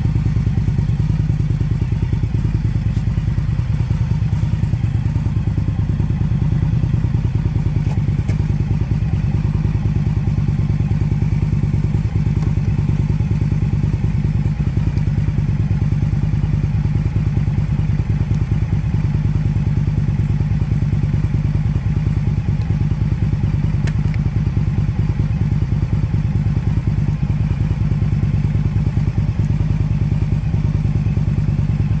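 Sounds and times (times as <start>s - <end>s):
motorcycle engine running: 0.0s - 32.0s.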